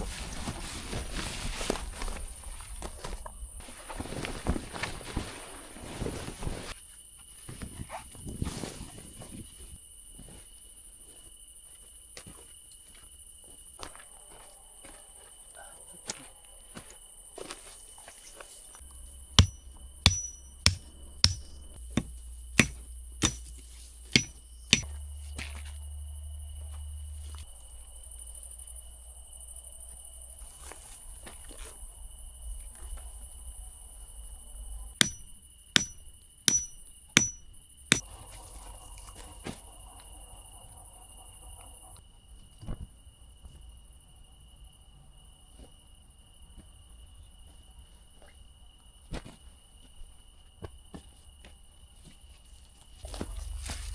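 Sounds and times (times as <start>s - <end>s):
night insects chirring: 0.0s - 53.9s
sharp strikes: 19.4s - 23.5s, 24.1s - 24.9s, 35.0s - 38.0s.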